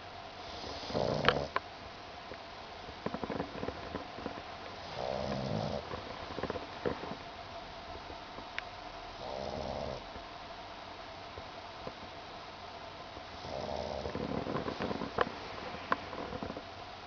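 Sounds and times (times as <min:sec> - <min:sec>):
dog snoring softly: 0:00.4 - 0:01.6, 0:03.0 - 0:07.3, 0:09.1 - 0:10.1, 0:13.3 - 0:16.6.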